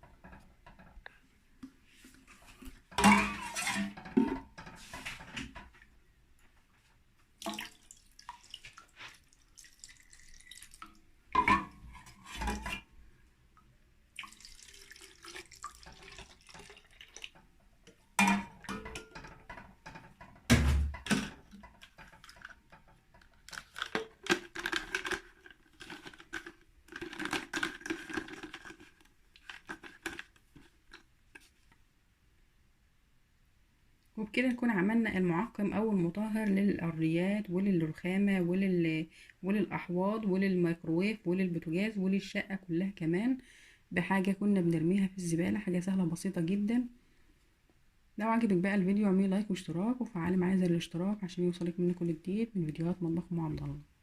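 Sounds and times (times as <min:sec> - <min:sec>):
kitchenware clinking and knocking: 0:02.9 - 0:05.7, 0:11.4 - 0:12.8, 0:18.2 - 0:22.9
liquid pouring: 0:07.4 - 0:12.8, 0:14.1 - 0:17.4.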